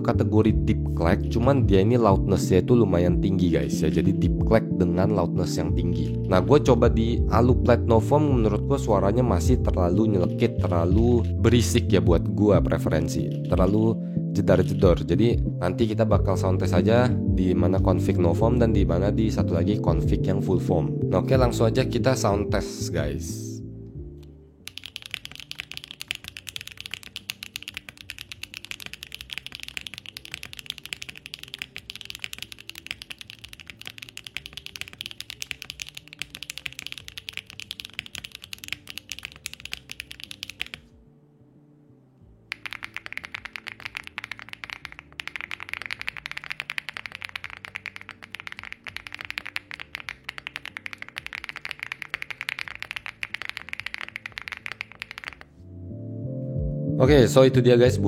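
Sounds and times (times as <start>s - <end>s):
fast typing on mechanical keyboard: 24.7s - 40.9s, 42.5s - 55.5s.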